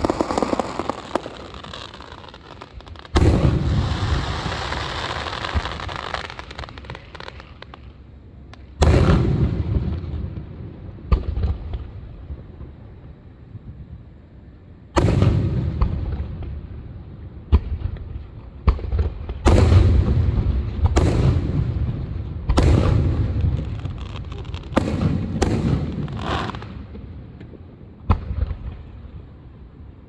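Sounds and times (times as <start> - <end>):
faint crackling: 0.0 - 8.7, 23.1 - 26.8
fireworks bangs with rumbling echo: 0.0 - 14.2, 14.9 - 29.8.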